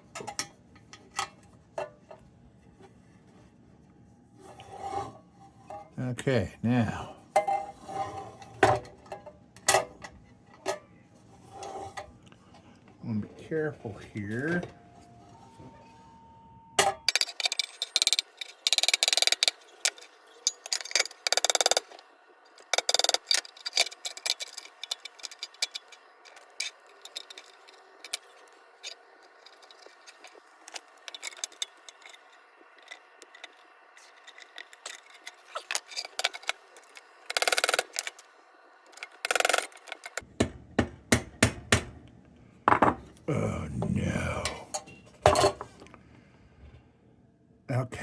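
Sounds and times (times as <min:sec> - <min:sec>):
metal parts clicking and clinking: 0:16.8 - 0:40.2.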